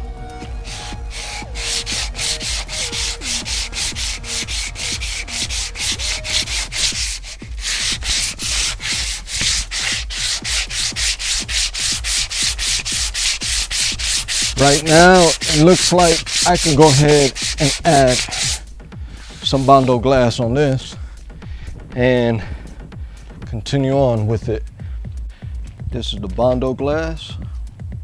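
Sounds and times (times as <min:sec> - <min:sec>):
sanding block rasping on filler: 0:00.5 - 0:21.0.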